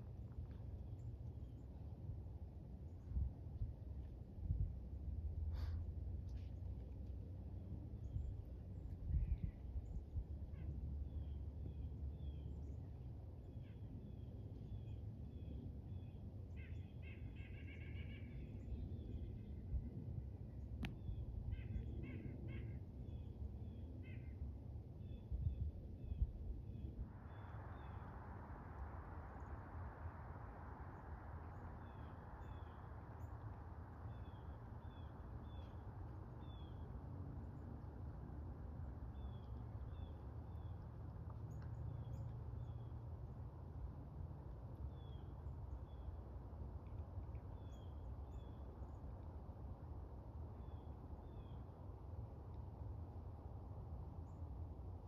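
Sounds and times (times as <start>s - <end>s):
low steady rumble: 0.0s - 55.0s
songbirds chirping: 26.1s - 43.3s.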